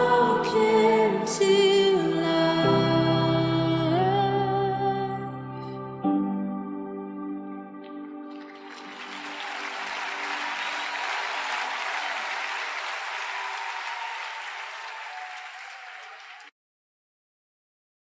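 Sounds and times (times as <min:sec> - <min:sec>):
congregation applauding: 0:08.3 - 0:16.5.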